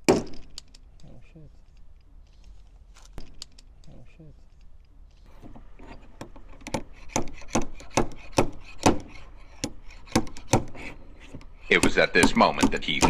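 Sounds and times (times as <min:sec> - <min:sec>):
dent puller knocking on car panel: 0:06.2 - 0:13.0.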